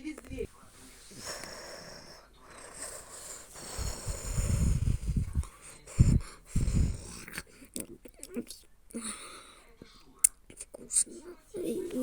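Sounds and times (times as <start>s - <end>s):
dog snorting: 1.0s - 7.7s
dog snoring: 1.1s - 7.5s.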